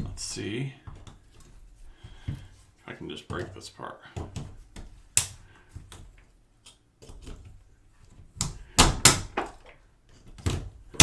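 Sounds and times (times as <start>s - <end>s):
plastic snapping: 8.4s - 11.0s.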